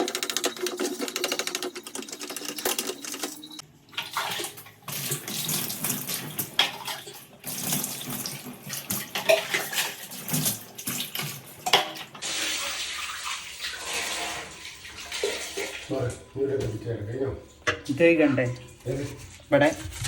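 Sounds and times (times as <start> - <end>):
knocks and scrapes of parts: 0.0 - 3.6
water splashing and sloshing: 0.0 - 20.0.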